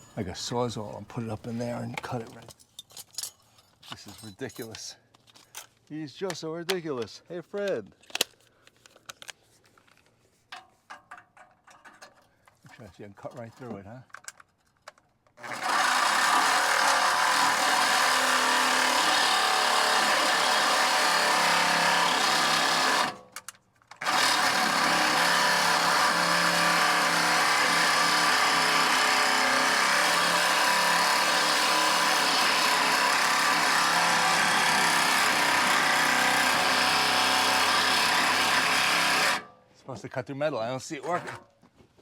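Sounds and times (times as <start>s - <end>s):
reciprocating saw cutting metal: 15.4s - 23.2s, 24.0s - 39.5s.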